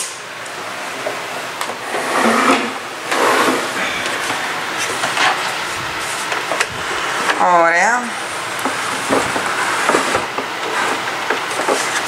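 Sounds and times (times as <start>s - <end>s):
plastic parts scraping and sliding: 8.6s - 12.0s.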